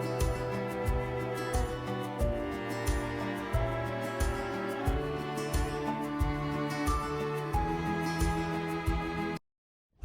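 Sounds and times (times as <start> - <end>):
background music with steady beat: 0.0 - 9.4.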